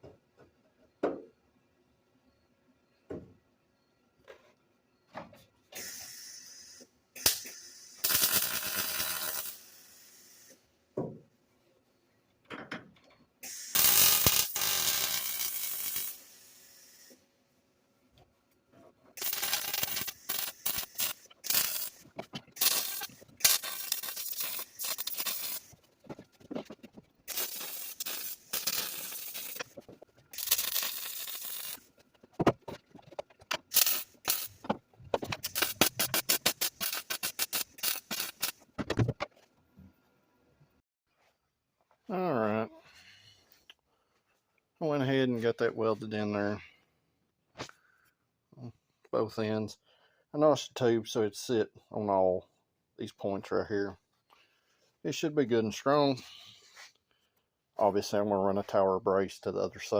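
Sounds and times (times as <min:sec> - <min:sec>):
welder arcing crackling hiss: 0:05.8 - 0:10.6, 0:13.4 - 0:17.2, 0:19.2 - 0:25.8, 0:27.3 - 0:31.9, 0:33.7 - 0:34.7, 0:35.3 - 0:38.6.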